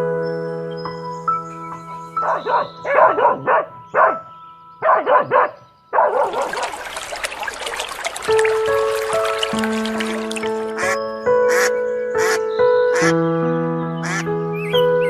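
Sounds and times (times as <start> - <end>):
background music: 0.0 - 7.1, 7.9 - 15.0
dog barking: 2.2 - 6.8.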